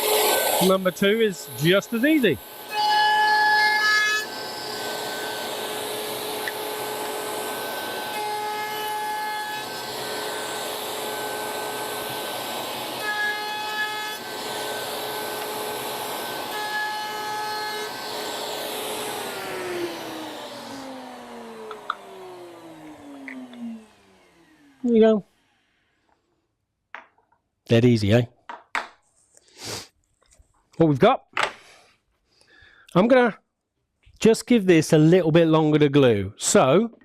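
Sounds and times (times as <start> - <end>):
router spinning down: 0.0 - 2.9, 3.7 - 25.8
router cutting wood: 0.0 - 25.8
router whining: 0.0 - 26.2.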